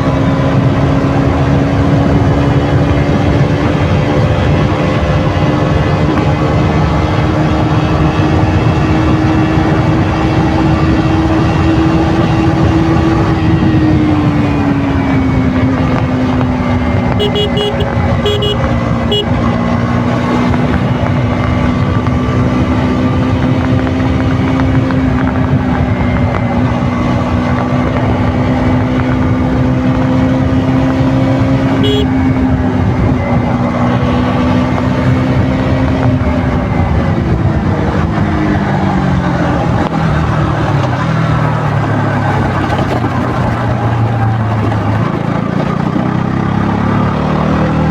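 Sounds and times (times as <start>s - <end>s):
motorcycle engine cruising: 0.0s - 47.9s
short horn beeps: 17.2s - 19.4s, 31.8s - 32.2s.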